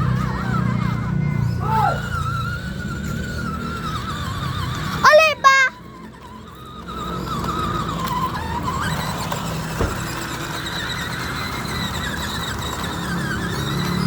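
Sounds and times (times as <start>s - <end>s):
toy car electric motor whining: 0.0s - 14.0s
knock: 9.8s - 10.0s.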